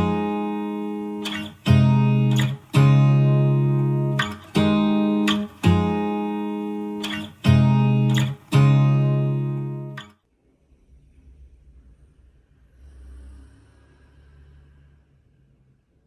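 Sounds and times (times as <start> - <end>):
guitar chords ringing: 0.0 - 10.1.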